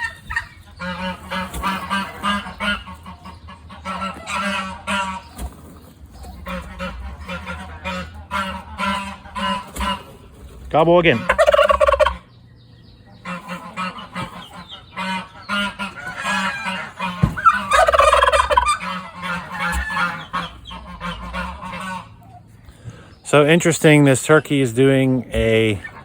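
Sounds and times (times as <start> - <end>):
turkey gobbling: 0.0 - 23.2, 25.2 - 26.0
low repetitive thumping: 17.1 - 17.8.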